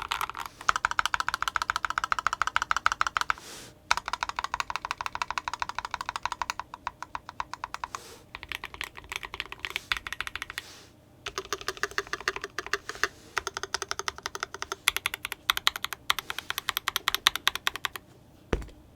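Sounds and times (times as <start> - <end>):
mechanical keyboard typing: 0.0 - 10.6, 11.3 - 18.0.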